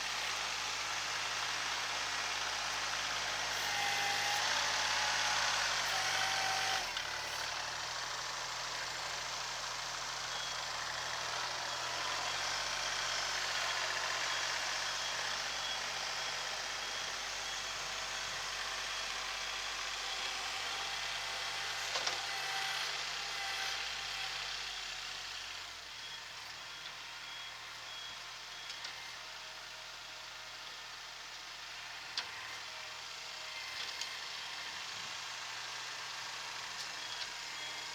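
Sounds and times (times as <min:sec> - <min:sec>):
tractor diesel engine running: 0:00.0 - 0:05.9.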